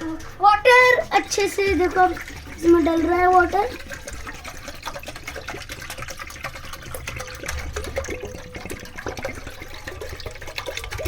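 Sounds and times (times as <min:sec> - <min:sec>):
water pouring and gurgling: 0:00.0 - 0:11.0.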